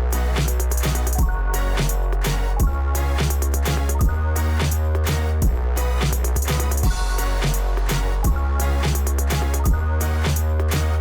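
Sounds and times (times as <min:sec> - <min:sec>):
electronic music with deep bass: 0:00.0 - 0:11.0
heavy kick drum: 0:01.2 - 0:01.4, 0:02.6 - 0:02.9, 0:04.0 - 0:04.2, 0:05.4 - 0:05.6, 0:06.6 - 0:09.0, 0:09.6 - 0:09.9.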